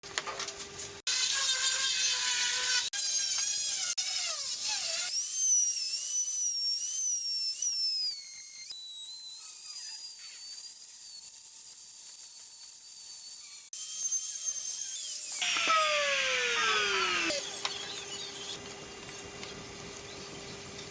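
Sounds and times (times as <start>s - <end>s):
electric power tool whining: 15.3s - 18.6s.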